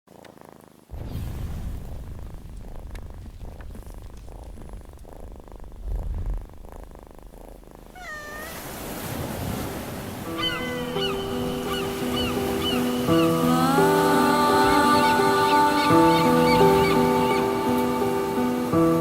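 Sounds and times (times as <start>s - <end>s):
cat purring: 0.1s - 18.6s
cat hissing: 3.8s - 9.1s, 10.3s - 12.9s.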